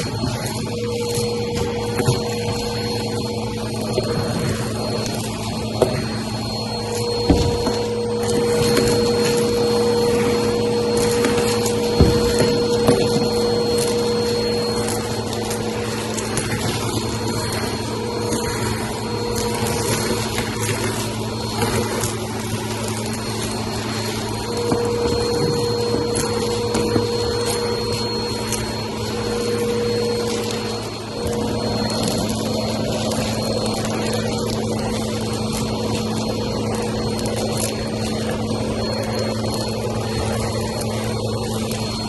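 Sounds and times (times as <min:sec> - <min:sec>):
debris crackling: 0:00.0 - 0:42.0
vacuum cleaner on carpet: 0:00.0 - 0:42.0
vacuum cleaner knocking: 0:00.1 - 0:22.0, 0:24.2 - 0:33.6.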